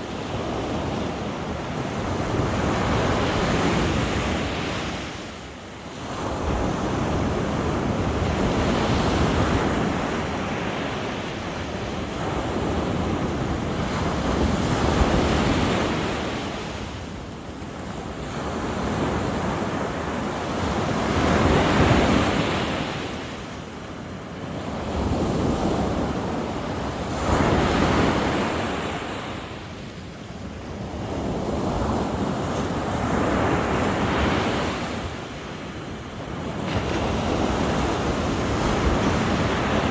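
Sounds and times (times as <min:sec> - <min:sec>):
sea waves breaking on shore: 0:30.7 - 0:39.9.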